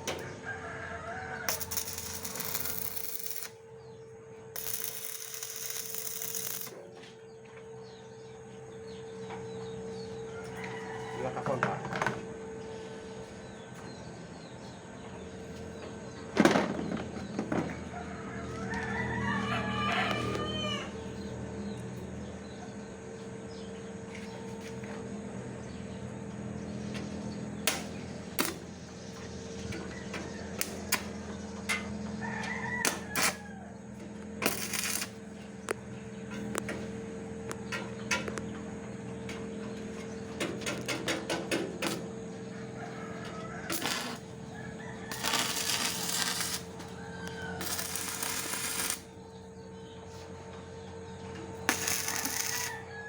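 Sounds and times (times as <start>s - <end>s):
rooster crowing: 0.0s - 3.4s, 10.2s - 11.9s, 17.7s - 21.4s, 29.8s - 31.0s, 32.0s - 35.2s, 42.4s - 49.2s, 51.7s - 53.0s
steady hum: 1.4s - 10.5s, 19.6s - 53.0s.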